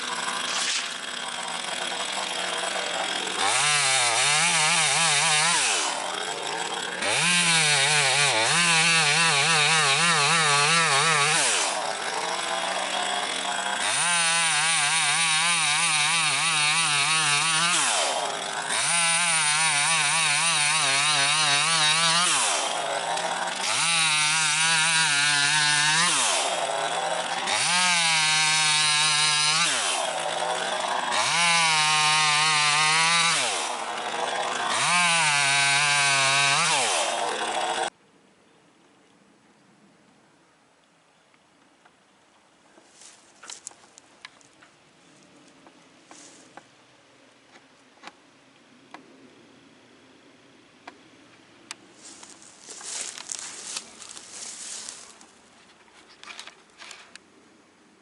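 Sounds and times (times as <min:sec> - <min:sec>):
chainsaw revving and idling: 0:00.0 - 0:38.0, 0:52.0 - 0:55.4.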